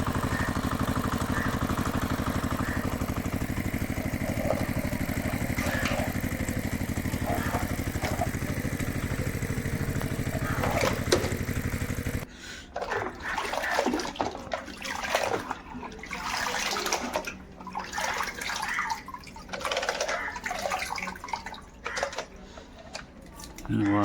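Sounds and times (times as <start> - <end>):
motor-like buzz: 0.0 - 12.3
water splashing and sloshing: 0.0 - 24.0.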